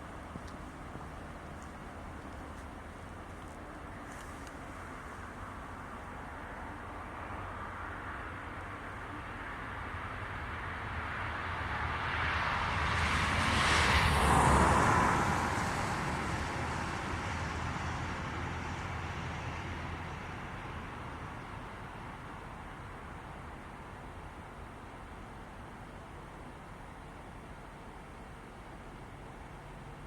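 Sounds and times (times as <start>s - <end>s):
road vehicle passing by: 8.0s - 22.3s.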